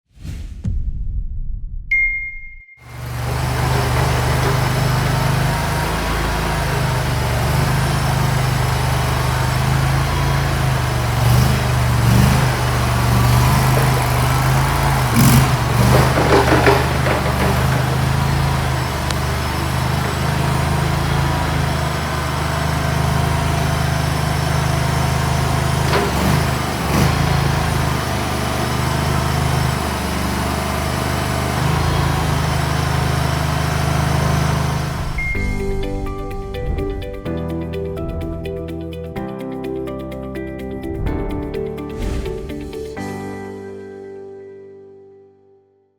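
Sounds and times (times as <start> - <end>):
small gasoline engine running: 2.8 - 36.0.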